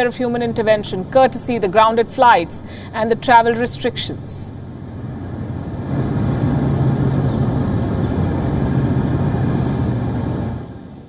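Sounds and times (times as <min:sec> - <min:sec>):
loud engine roar: 0:04.6 - 0:11.0.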